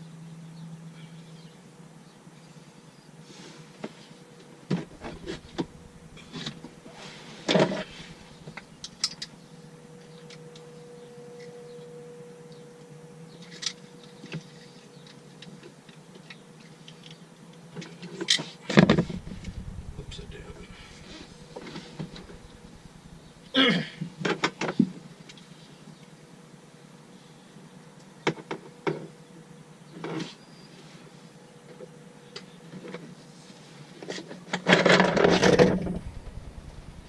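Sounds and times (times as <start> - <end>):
faint steady hum: 0.0 - 17.8, 18.7 - 24.2, 35.3 - 37.0.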